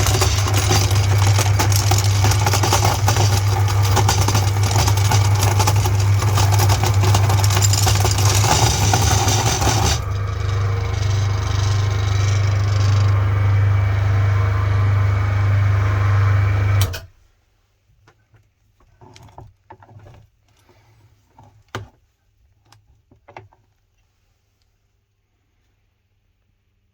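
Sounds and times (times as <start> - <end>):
candy crunching and squishing: 0.0 - 12.5
meat grinder motor hum: 0.0 - 17.0.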